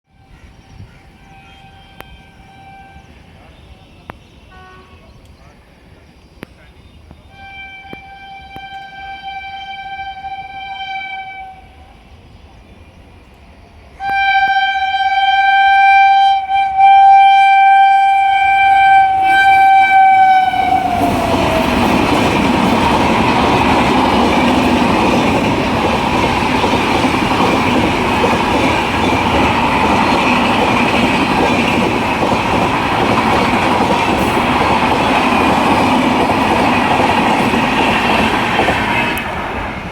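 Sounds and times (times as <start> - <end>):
train coaches rushing past: 0.2 - 39.9
locomotive horn blast: 1.2 - 5.1, 7.3 - 11.9, 14.0 - 22.0.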